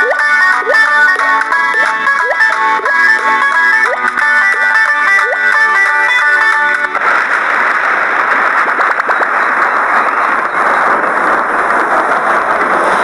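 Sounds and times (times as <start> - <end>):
plucked-string music: 0.0 - 7.1
rain hiss: 7.0 - 13.0.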